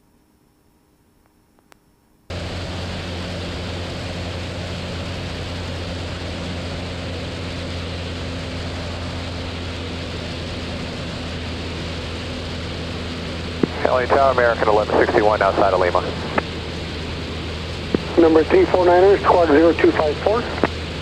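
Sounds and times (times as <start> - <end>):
airplane engine and propeller drone: 2.3 - 21.0.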